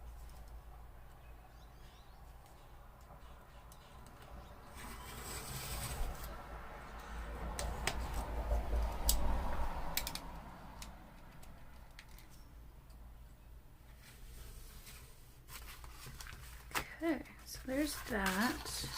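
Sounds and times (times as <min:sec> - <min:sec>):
cardboard being cut: 0:04.8 - 0:06.3
sharp clicks: 0:09.9 - 0:13.0.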